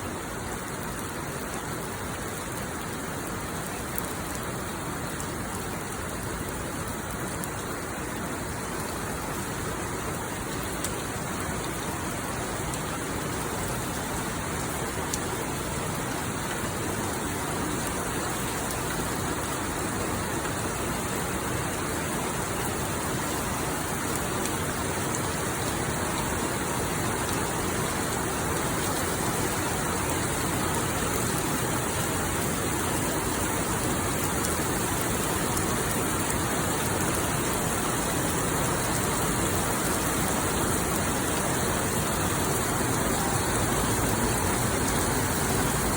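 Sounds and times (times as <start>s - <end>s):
heavy rain hissing: 0.0s - 45.9s.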